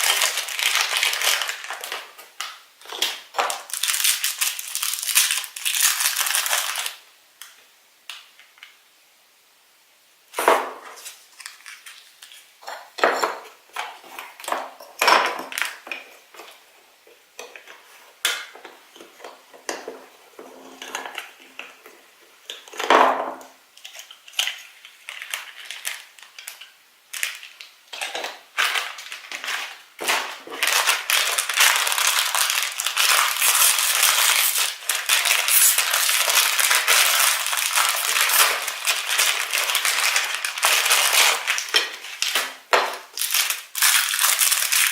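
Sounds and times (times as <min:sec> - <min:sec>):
wrapping crinkling and tearing: 0:00.0 - 0:07.1, 0:10.9 - 0:12.6, 0:23.8 - 0:44.9
plastic packaging clicks and rustles: 0:00.0 - 0:08.8, 0:10.4 - 0:23.0, 0:23.7 - 0:44.9.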